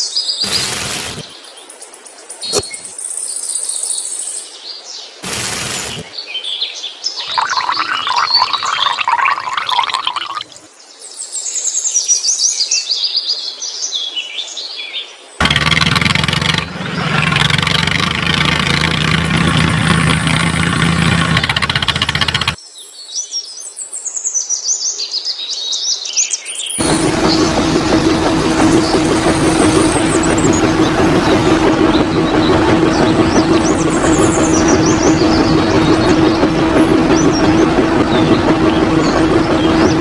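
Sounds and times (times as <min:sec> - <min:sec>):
birds chirping: 0:00.4 - 0:01.5, 0:05.2 - 0:06.2, 0:07.1 - 0:10.7, 0:26.8 - 0:40.0
loud steady low hum: 0:26.8 - 0:40.0.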